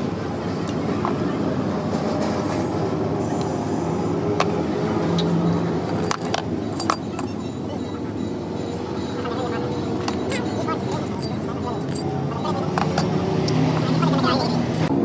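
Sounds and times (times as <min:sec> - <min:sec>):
vehicle engine running: 0:00.0 - 0:15.0
sharp metallic clinks: 0:05.1 - 0:14.9.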